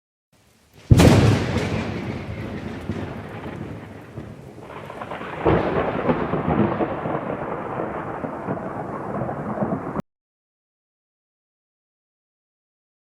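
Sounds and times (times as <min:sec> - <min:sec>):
rain hiss: 0:00.4 - 0:10.0
thunderclap with rolling rumble: 0:00.8 - 0:10.0.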